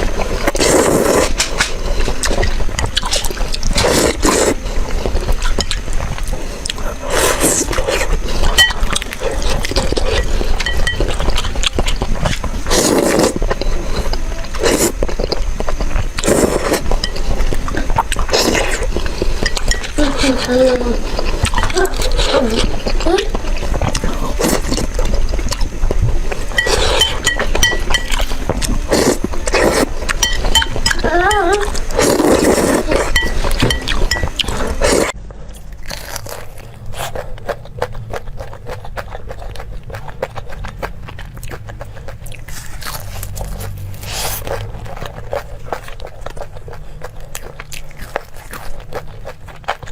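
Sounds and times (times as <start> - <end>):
slurping noodles: 0.0 - 25.7, 26.3 - 35.2
wet chewing with clicks: 0.0 - 49.9.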